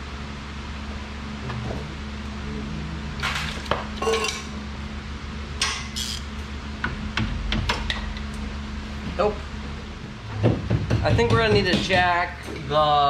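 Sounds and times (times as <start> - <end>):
steady low hum: 0.0 - 13.0
metal clinking and scraping: 3.5 - 4.6.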